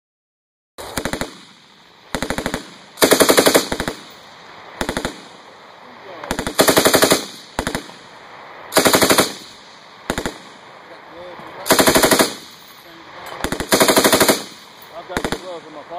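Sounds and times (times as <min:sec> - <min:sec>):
machine gun automatic bursts: 0:00.9 - 0:01.4, 0:02.1 - 0:04.1, 0:04.8 - 0:05.2, 0:06.3 - 0:07.9, 0:08.8 - 0:09.5, 0:10.1 - 0:10.4, 0:11.7 - 0:12.6, 0:13.4 - 0:15.5.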